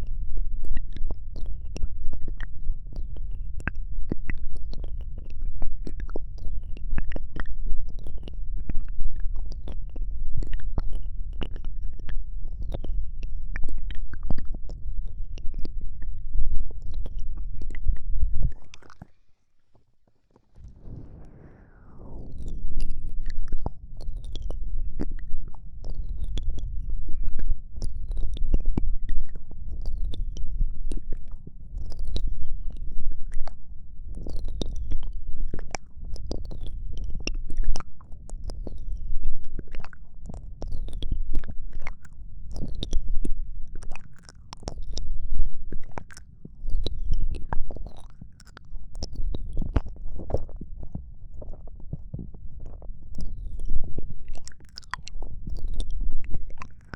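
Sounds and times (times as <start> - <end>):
low rumble: 20.5 - 30.8
wet mouth clicks and smacks: 39.5 - 56.9.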